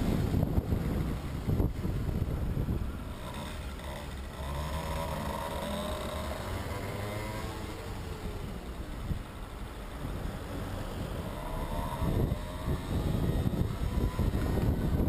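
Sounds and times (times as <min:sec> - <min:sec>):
engine-like hum: 0:00.0 - 0:15.0
wind buffeting microphone: 0:00.0 - 0:15.0.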